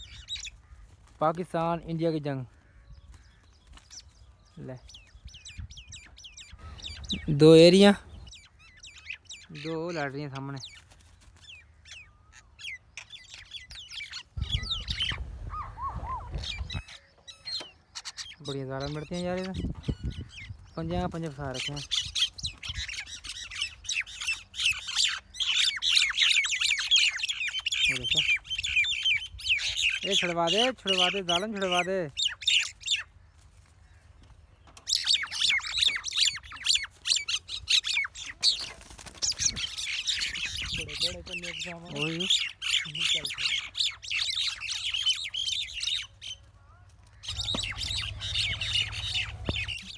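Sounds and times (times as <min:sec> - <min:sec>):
birds chirping rapidly: 0:00.0 - 0:49.9
lower looping bird calls: 0:00.0 - 0:49.9
low rumble: 0:47.3 - 0:49.9.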